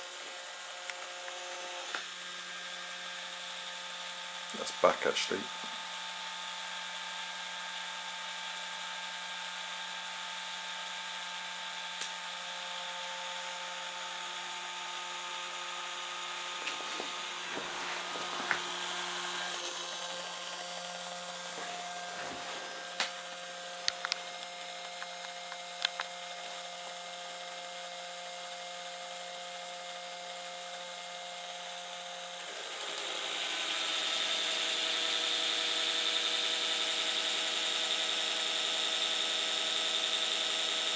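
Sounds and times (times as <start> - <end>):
electric motors whining: 0.0 - 40.9.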